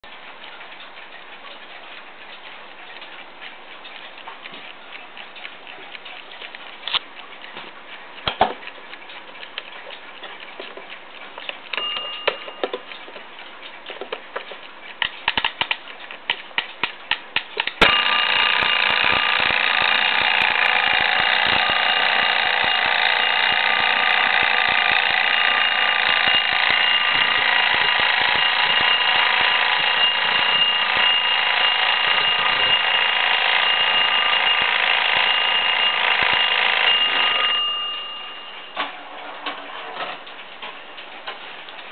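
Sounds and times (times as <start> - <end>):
alarm clock ticking: 0.0 - 39.0
alarm clock ringing: 11.7 - 12.9, 17.8 - 39.1.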